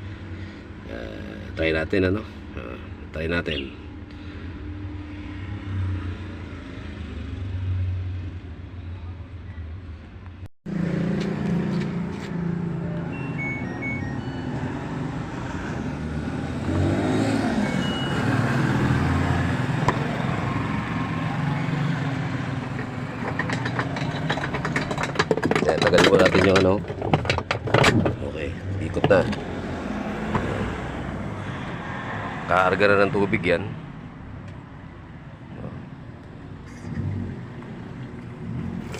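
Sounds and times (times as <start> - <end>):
short electronic beeps: 13.1 - 14.7, 17.6 - 18.5.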